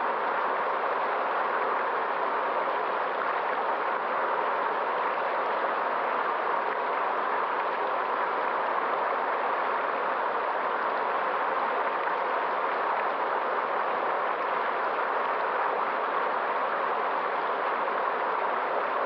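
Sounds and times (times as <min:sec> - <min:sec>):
river water flowing: 0:00.0 - 0:19.0.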